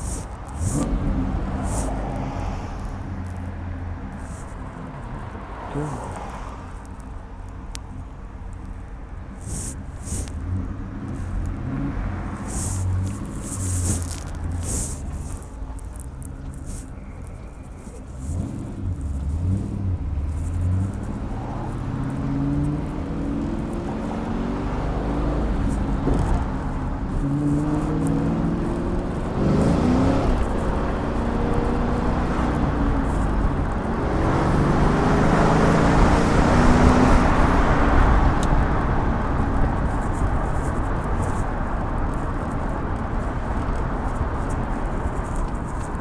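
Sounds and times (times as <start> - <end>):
car engine accelerating: 0.0 - 8.6, 9.2 - 46.0.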